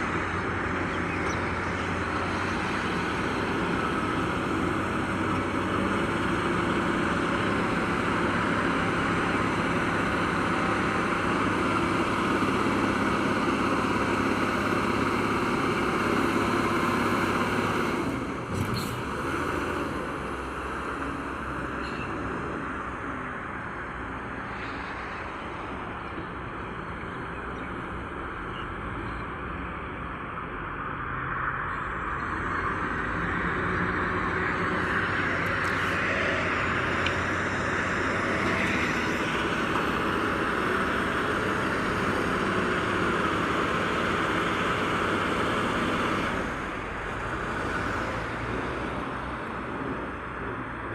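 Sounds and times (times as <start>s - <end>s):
diesel engine under load: 0.0s - 50.9s.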